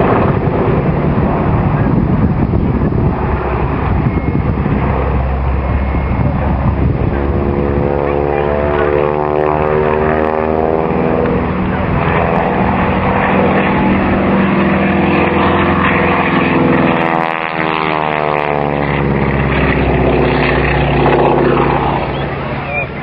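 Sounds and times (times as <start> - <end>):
propeller plane flying by: 0.0 - 23.0.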